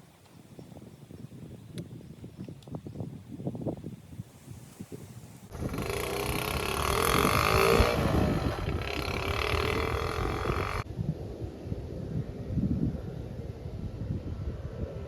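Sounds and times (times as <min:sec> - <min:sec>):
wind rush: 0:00.5 - 0:15.0
motorcycle engine running: 0:05.5 - 0:10.8.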